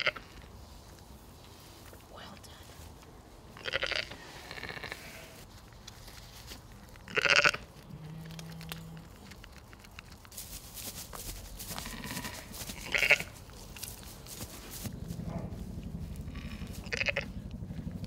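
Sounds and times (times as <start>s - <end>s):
sheep bleating: 0.0s - 0.2s, 3.6s - 5.4s, 7.1s - 9.1s, 11.7s - 13.4s, 16.2s - 17.4s.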